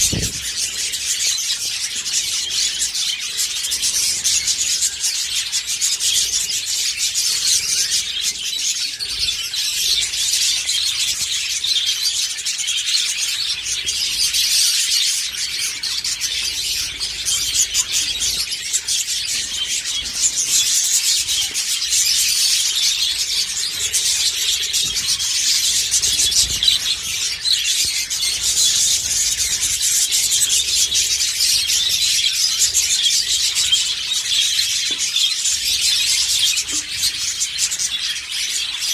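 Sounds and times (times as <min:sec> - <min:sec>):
budgerigars chattering: 0:00.0 - 0:38.9.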